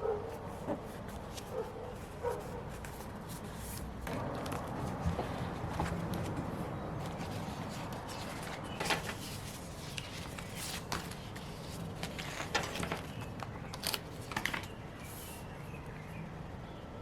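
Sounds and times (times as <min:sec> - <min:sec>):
paper and stickers rustling: 0:00.3 - 0:15.4.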